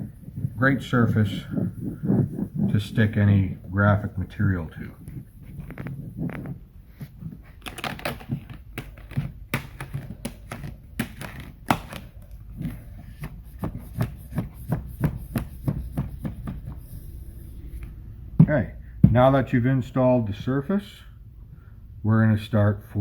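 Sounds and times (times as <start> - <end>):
squeegee clicking and scraping: 0.0 - 18.0.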